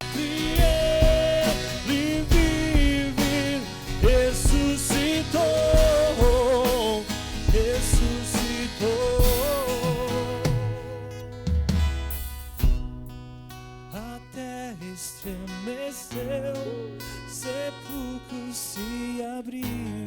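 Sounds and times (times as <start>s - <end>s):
person singing: 0.0s - 11.7s
worship band music: 0.0s - 13.2s
drums steady beat: 0.0s - 14.1s.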